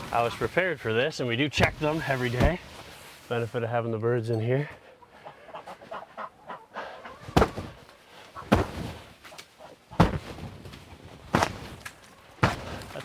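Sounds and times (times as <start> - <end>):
thumps on plastic sheeting: 1.6 - 2.8, 7.4 - 9.1, 10.0 - 13.0
chickens or ducks making small sounds: 4.8 - 10.2.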